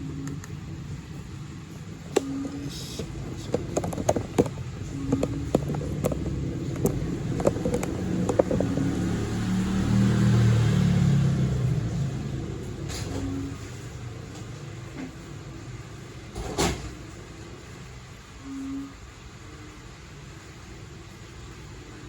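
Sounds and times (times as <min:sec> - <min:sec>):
steady low hum: 0:00.0 - 0:16.3
sharp clicks and taps: 0:02.1 - 0:09.1.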